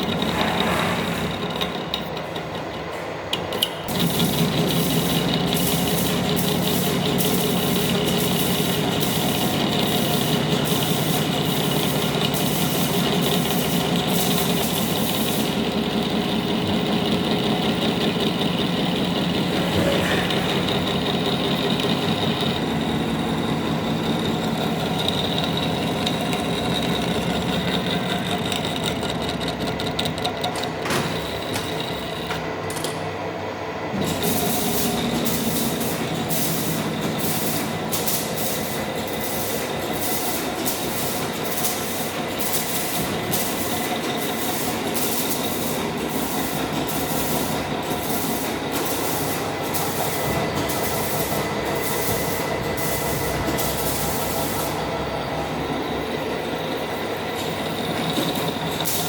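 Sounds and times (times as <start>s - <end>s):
metal lathe drone: 3.9s - 32.3s, 43.1s - 59.0s
fast regular ticking: 20.5s - 30.8s.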